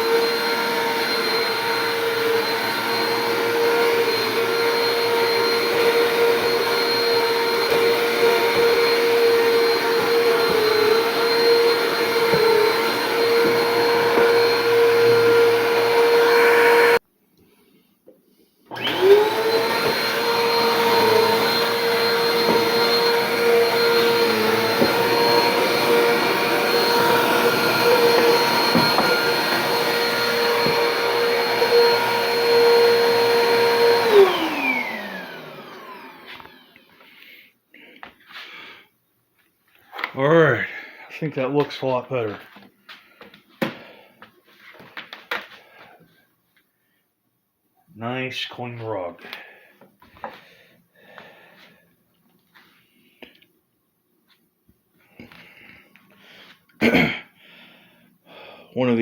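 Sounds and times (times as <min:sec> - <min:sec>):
vacuum cleaner motor whine: 0:00.0 - 0:17.0, 0:18.7 - 0:37.1.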